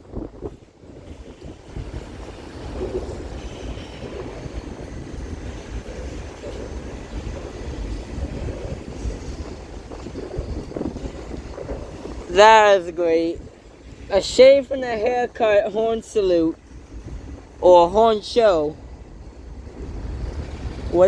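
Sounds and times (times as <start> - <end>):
train rumbling on rails: 0.0 - 21.0
wind buffeting microphone: 0.0 - 21.0.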